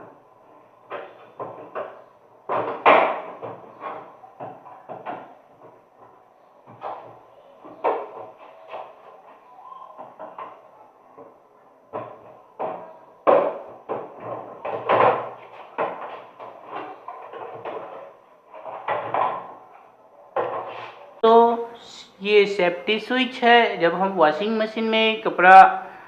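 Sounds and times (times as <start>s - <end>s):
washing machine parts rattling: 11.9s - 21.2s.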